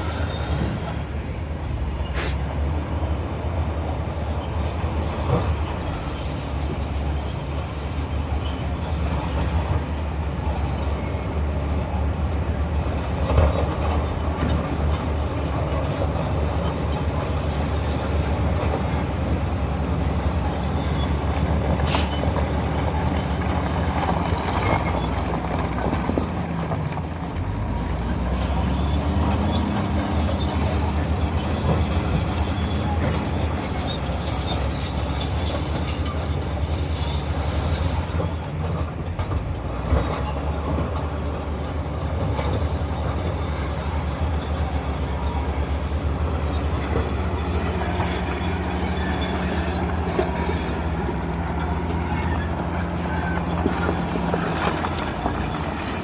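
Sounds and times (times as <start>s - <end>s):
bulldozer diesel engine: 0.0s - 56.0s
crawler tracks clattering: 12.6s - 56.0s.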